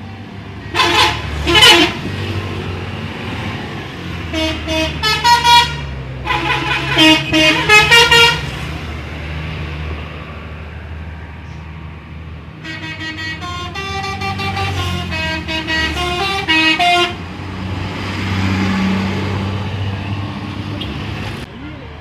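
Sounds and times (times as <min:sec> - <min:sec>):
musical bus horn tune: 0:00.7 - 0:02.1, 0:04.3 - 0:08.6, 0:12.6 - 0:17.2.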